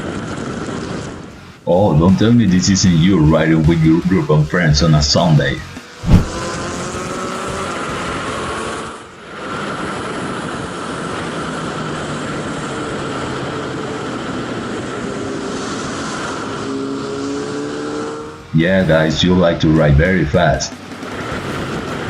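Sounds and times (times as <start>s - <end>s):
wind noise: 6.0s - 7.1s.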